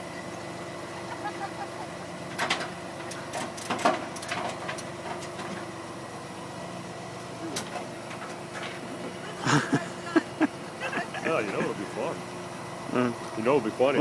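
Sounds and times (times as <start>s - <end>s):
car engine idling: 5.9s - 14.0s.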